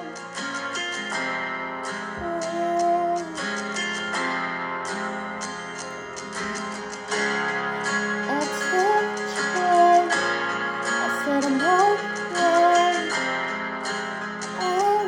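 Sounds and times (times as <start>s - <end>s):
guitar strumming chords: 0.0s - 15.0s
wordless vocal melody: 2.0s - 4.2s, 6.6s - 15.0s.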